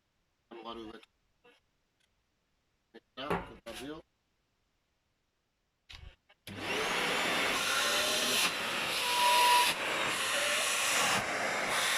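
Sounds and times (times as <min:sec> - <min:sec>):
vacuum extractor running: 0:06.5 - 0:11.9.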